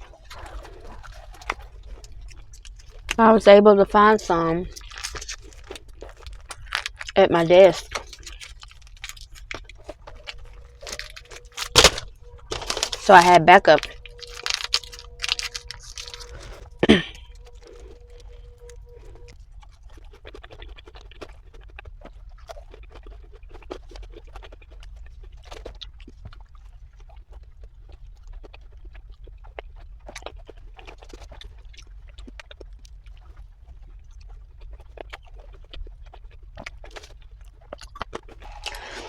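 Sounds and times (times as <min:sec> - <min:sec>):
low hum: 0:00.0 - 0:19.4
person chewing: 0:00.0 - 0:39.0.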